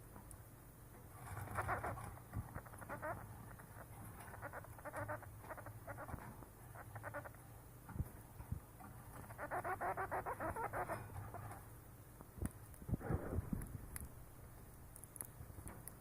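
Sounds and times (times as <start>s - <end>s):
chipmunk clucking calls: 2.5s - 7.4s, 9.3s - 11.0s.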